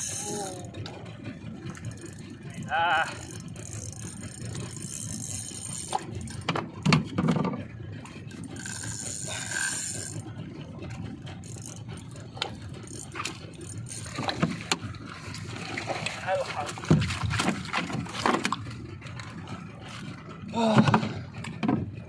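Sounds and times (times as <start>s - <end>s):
fishing reel gears rattling: 0.0s - 7.2s, 8.1s - 15.1s
knocks and clicks: 5.9s - 7.6s.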